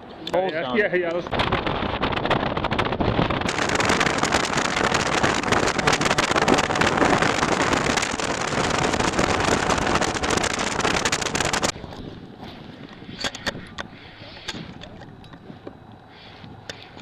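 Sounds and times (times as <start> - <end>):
wind buffeting microphone: 1.2 - 16.7
jet boat engine: 1.5 - 11.7.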